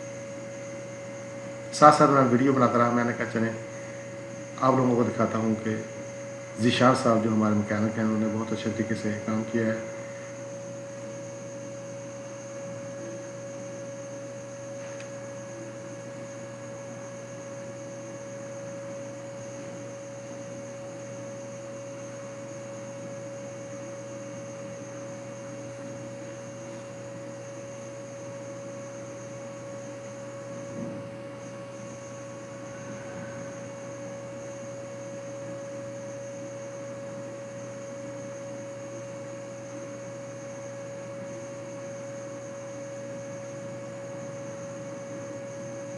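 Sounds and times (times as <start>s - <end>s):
steady hum: 0.0s - 45.9s.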